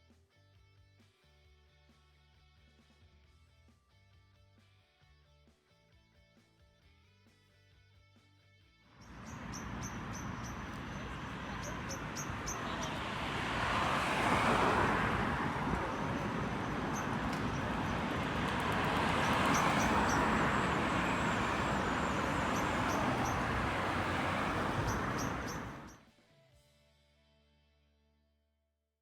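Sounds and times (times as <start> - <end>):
vehicles passing: 9.0 - 26.0.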